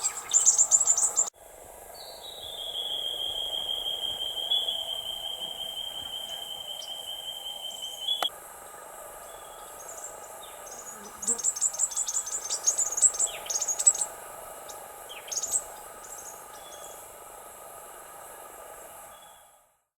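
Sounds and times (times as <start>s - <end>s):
small birds chirping: 0.0s - 1.3s, 2.0s - 8.3s, 9.3s - 14.1s.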